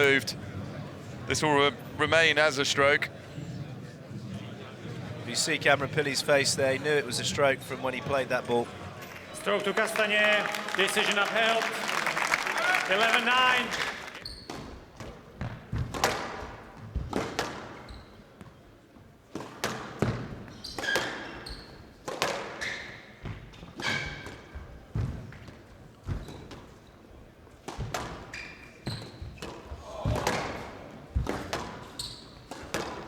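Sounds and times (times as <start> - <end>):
shoes squeaking on court floor: 13.0 - 15.9, 16.8 - 18.7, 19.4 - 33.0
racket striking ball: 29.4 - 31.9, 32.5 - 33.0.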